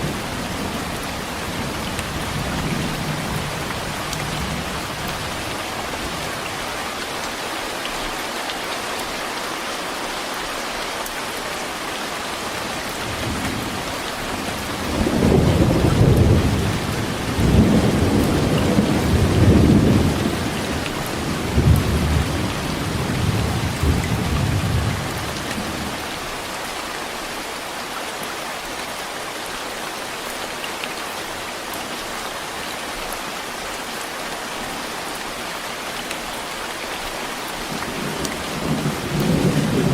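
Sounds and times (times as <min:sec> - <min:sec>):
heavy rain: 0:00.0 - 0:39.9
rolling thunder rumble: 0:14.6 - 0:25.9, 0:38.0 - 0:39.9.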